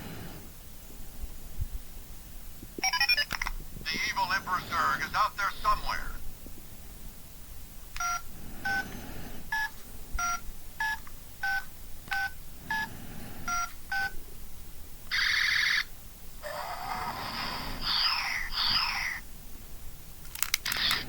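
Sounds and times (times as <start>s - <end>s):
toy phone keypad beeping: 2.8s - 3.4s, 8.0s - 8.8s, 9.6s - 12.9s, 13.5s - 14.2s, 15.1s - 15.9s.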